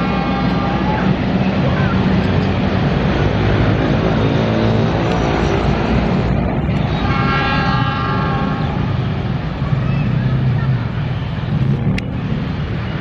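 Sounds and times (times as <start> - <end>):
locomotive horn: 0.0 - 1.0, 6.6 - 9.4
passenger train rumbling by: 0.0 - 13.0.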